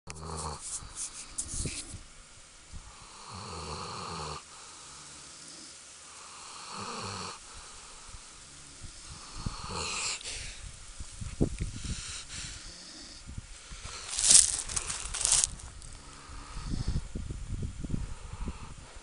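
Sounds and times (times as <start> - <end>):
snoring: 0.1 - 0.6, 3.0 - 7.4, 9.0 - 10.2.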